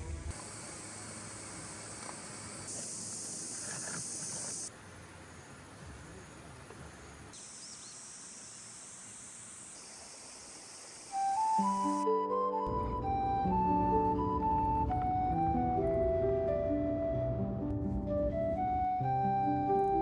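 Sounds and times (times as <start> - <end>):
insects chorus: 0.3 - 12.1.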